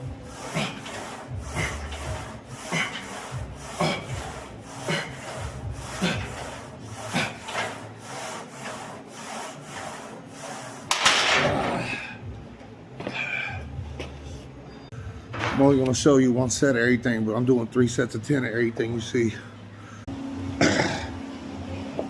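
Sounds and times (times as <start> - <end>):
rhythmic rasping strokes: 0.0 - 12.5.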